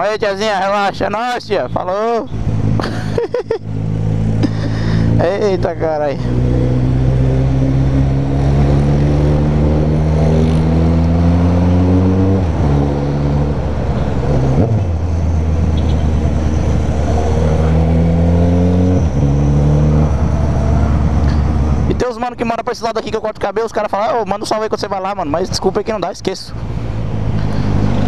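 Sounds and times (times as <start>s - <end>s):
motorcycle engine accelerating: 2.4s - 22.0s.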